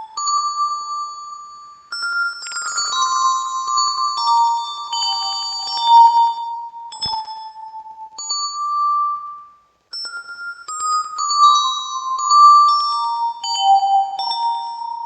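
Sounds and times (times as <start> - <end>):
keyboard bell-like notes with echoes: 0.0 - 15.0
sharp click: 7.0 - 7.4.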